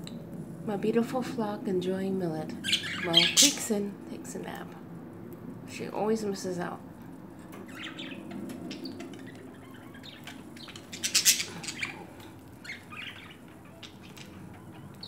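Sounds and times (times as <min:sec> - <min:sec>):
budgerigars chirping: 0:02.6 - 0:03.6, 0:07.7 - 0:15.0.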